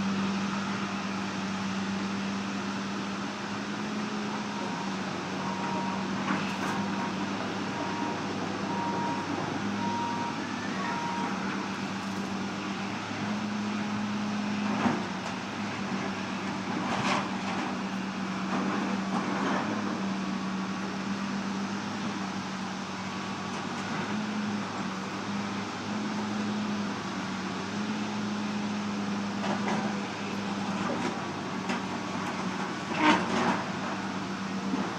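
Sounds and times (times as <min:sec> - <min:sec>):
diesel engine running: 0:00.0 - 0:34.9
back-up alarm beeping: 0:07.8 - 0:11.4.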